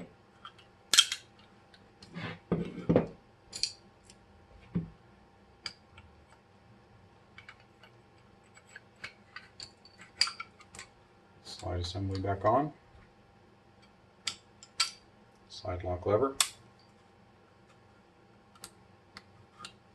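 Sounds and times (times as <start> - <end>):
pistol parts clicking: 0.5 - 1.3.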